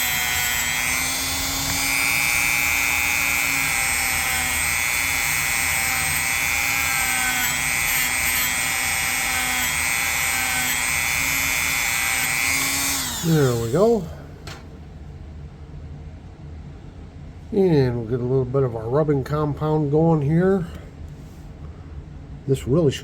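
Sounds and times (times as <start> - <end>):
rotary tool wire brush whining: 0.0 - 14.1.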